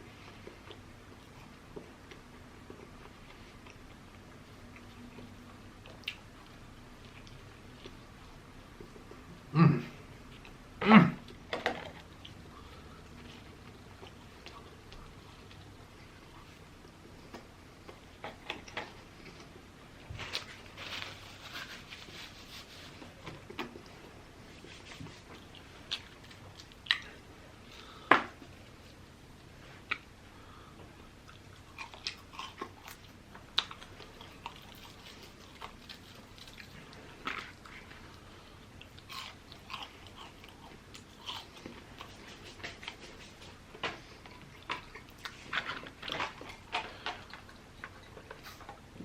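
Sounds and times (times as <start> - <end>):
person chewing food: 0.0 - 49.0.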